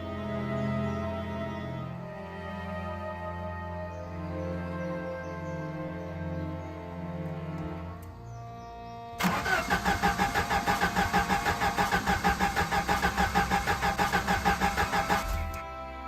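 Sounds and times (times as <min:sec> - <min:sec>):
engine cranking on starter: 0:09.2 - 0:15.6.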